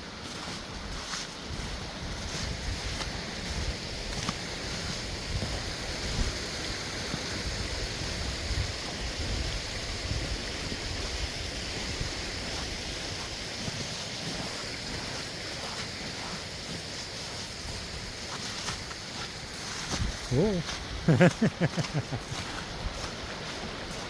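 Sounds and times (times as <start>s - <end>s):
creek rushing: 0.0s - 24.0s.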